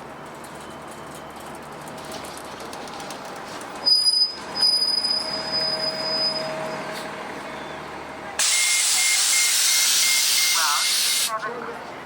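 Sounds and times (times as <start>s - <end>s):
street noise: 0.0s - 12.0s
vehicle metal-on-metal squeal: 3.8s - 6.9s.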